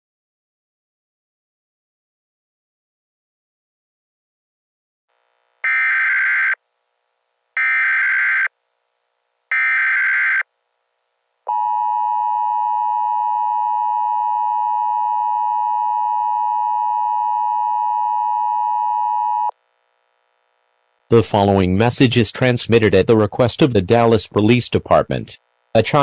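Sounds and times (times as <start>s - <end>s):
digital data tone bursts: 5.6s - 6.6s.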